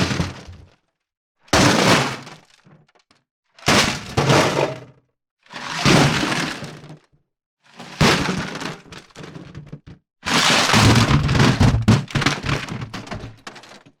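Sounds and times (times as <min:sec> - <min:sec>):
ice cubes rattling in bucket: 0:08.0 - 0:14.0.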